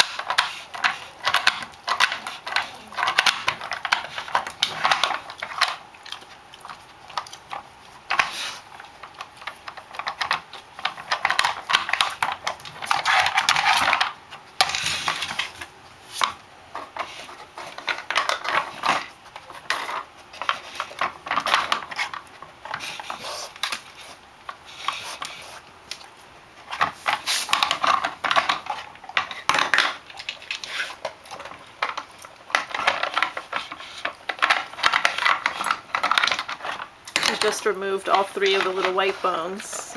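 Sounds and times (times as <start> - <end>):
plastic puzzle toy clattering: 26.7 - 39.9.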